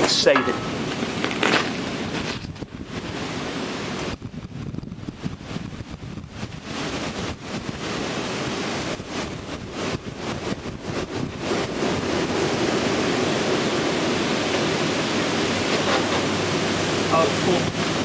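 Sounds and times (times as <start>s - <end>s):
wind noise on microphone: 0.0s - 18.0s
lawn mower engine: 11.7s - 18.0s.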